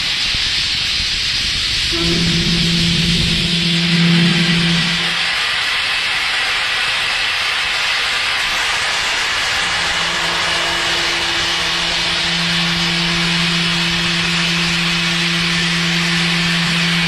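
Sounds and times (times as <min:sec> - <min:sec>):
milling machine low hum: 0:01.8 - 0:06.4, 0:09.2 - 0:17.0.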